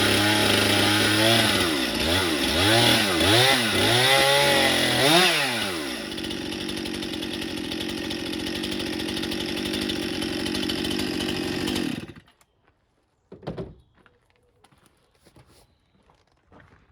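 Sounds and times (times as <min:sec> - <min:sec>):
chainsaw idling: 0:00.0 - 0:12.3.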